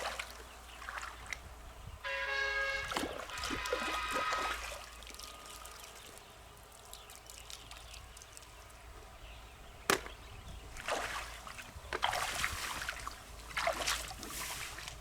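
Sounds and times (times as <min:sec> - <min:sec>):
water splashing and sloshing: 0:00.0 - 0:09.0, 0:09.8 - 0:15.0.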